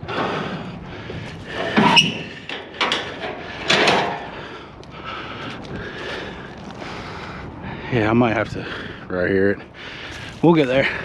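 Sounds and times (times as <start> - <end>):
scrap metal clanking and scraping: 1.3 - 4.4.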